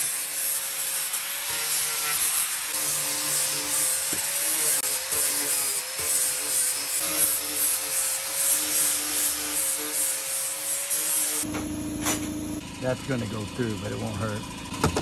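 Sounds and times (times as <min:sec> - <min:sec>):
wood sanding rasp: 0:00.0 - 0:11.5
steady hum: 0:11.4 - 0:13.0.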